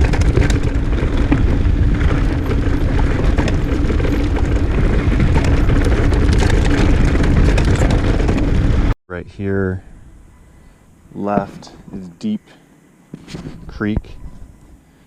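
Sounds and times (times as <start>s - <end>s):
bike clattering over rough ground: 0.0s - 9.0s
wind buffeting microphone: 0.0s - 9.0s.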